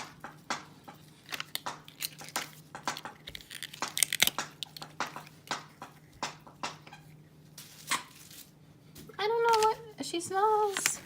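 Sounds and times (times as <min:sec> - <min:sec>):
plastic toy packaging crinkling: 0:01.2 - 0:02.6, 0:03.2 - 0:04.8, 0:09.4 - 0:09.8.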